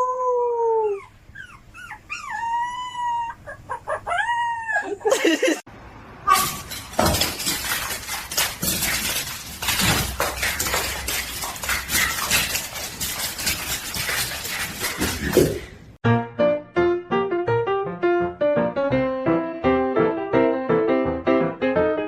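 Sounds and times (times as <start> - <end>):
hard objects clattering: 6.3 - 16.0.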